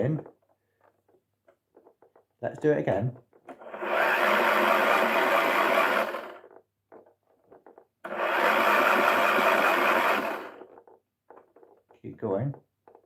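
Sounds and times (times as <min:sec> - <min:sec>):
toy motor whirring and rattling: 0:03.4 - 0:06.6, 0:07.4 - 0:11.0.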